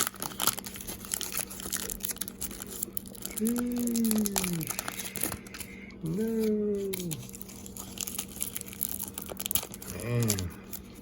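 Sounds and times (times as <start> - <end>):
cards being handled: 0.0 - 11.0
wrapper crinkling: 0.0 - 11.0
vocal hum falling in pitch: 3.3 - 5.0, 6.0 - 7.3, 9.8 - 10.7.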